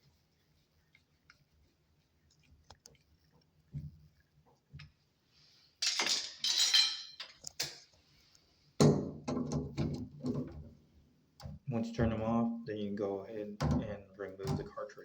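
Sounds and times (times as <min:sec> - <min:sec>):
metal tool clinking and scraping: 0:05.8 - 0:07.8.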